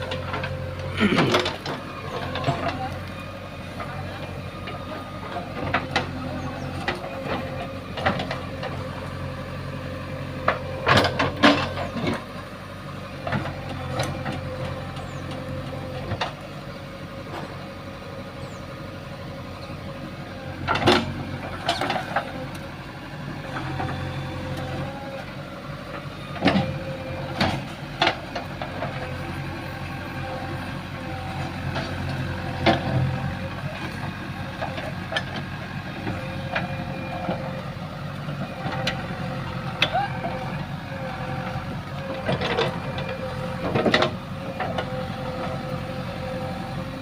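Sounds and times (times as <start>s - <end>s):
diesel engine running: 0.0s - 47.0s.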